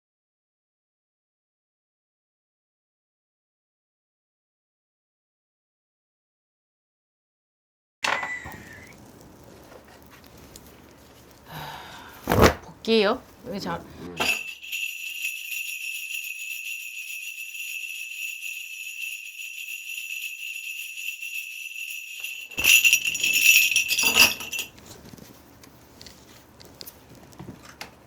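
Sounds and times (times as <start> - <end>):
bell cluster jingling: 14.2 - 24.8.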